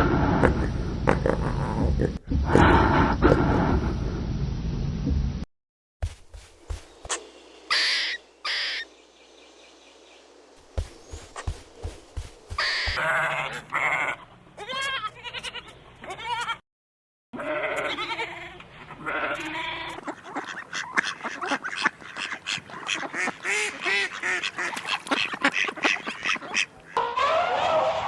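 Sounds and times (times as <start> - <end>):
rapid repeated animal calls: 12.5 - 13.2
sheep or goat bleating: 12.7 - 16.6, 17.4 - 20.0.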